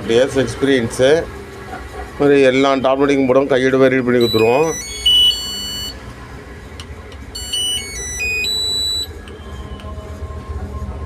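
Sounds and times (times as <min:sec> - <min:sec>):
washing machine buzzer tune: 0:04.2 - 0:06.0, 0:07.4 - 0:09.2.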